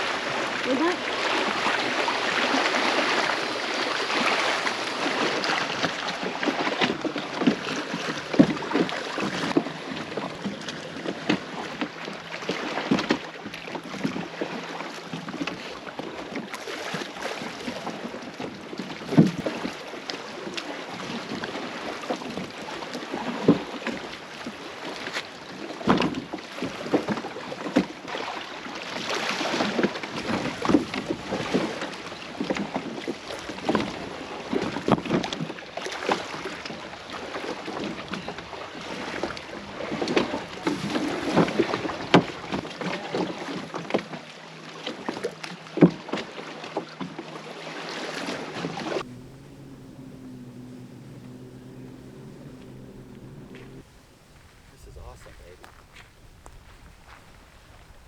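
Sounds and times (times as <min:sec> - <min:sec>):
paddle splashing in water: 0:00.0 - 0:06.7
steady watery hiss: 0:49.0 - 0:57.7.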